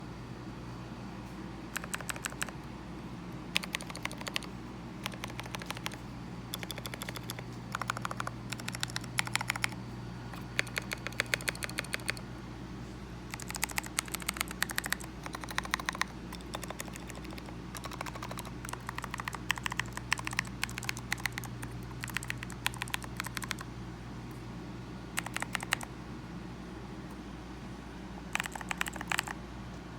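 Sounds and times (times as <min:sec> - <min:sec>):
low steady hum: 0:00.0 - 0:29.9
mechanical keyboard typing: 0:01.7 - 0:02.6, 0:03.5 - 0:12.2, 0:13.3 - 0:23.7, 0:25.2 - 0:25.9, 0:28.3 - 0:29.4.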